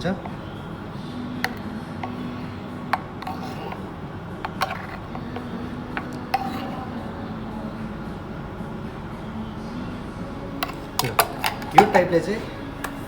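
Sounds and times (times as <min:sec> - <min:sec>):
steady low hum: 0:00.0 - 0:13.0
metal spoon clinking against cup: 0:01.4 - 0:07.0, 0:10.6 - 0:12.1.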